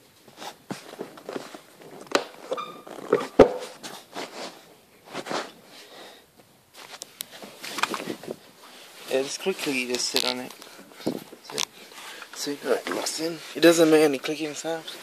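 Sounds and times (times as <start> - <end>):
brief squeak: 2.5 - 3.4.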